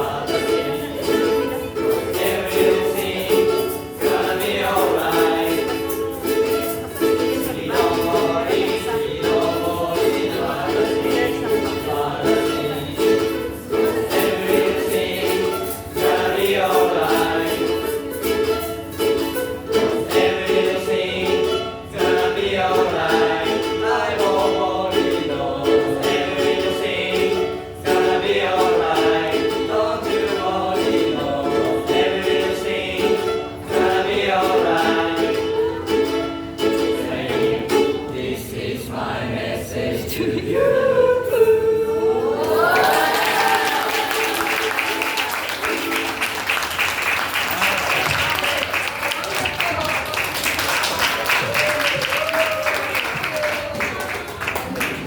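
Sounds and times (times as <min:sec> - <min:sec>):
group of voices singing: 0:00.0 - 0:48.8
strummed ukulele: 0:00.0 - 0:55.0
applause: 0:42.5 - 0:55.0.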